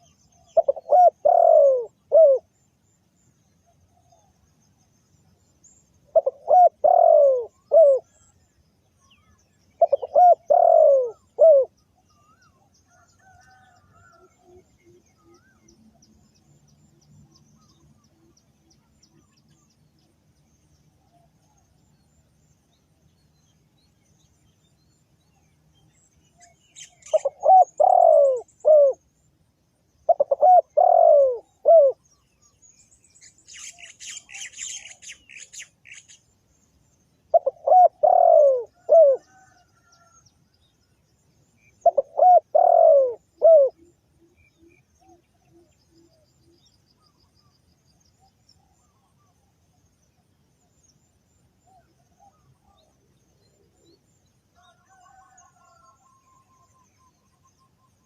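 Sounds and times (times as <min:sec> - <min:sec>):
dove cooing: 0:00.0 - 0:02.5, 0:06.1 - 0:08.2, 0:09.8 - 0:11.8, 0:26.8 - 0:29.0, 0:30.1 - 0:32.0, 0:37.3 - 0:40.1, 0:41.8 - 0:43.9
bird chirps: 0:00.0 - 0:29.4, 0:30.0 - 0:40.2.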